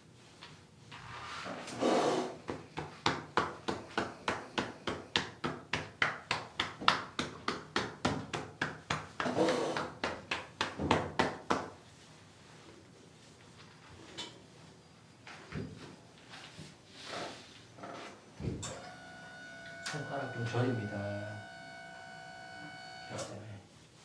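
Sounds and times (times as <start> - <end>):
hands striking body in massage: 2.5 - 11.8.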